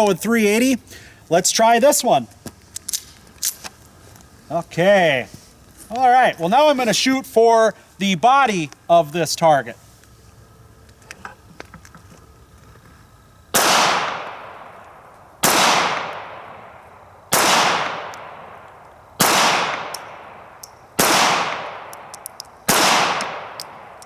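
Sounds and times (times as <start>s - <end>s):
pistol shots: 13.5s - 16.7s, 17.3s - 24.0s.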